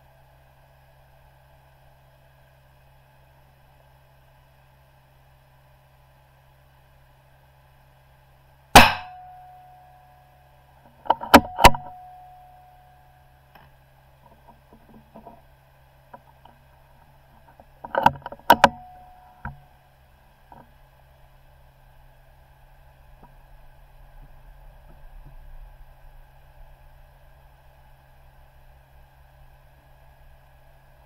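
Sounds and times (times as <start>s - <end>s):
rifle shot: 8.8s - 9.4s.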